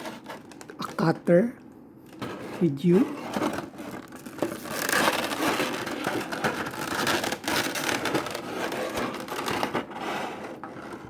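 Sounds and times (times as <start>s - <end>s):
tape scraping on cardboard: 3.2s - 11.0s.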